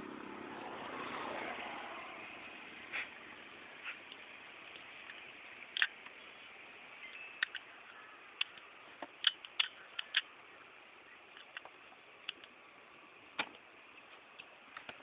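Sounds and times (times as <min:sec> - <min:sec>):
steady hiss: 0:02.1 - 0:15.0.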